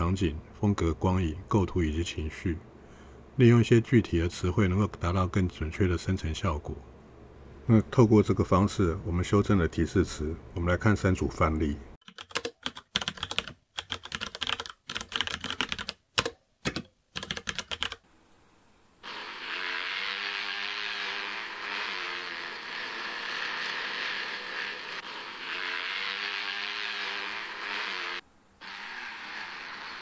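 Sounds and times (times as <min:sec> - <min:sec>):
computer keyboard typing: 0:12.0 - 0:18.0.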